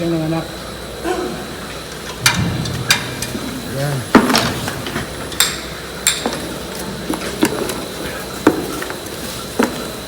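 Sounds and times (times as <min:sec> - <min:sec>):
steady machinery hum: 0:00.0 - 0:10.0
equipment knocks and clanks: 0:02.0 - 0:07.8.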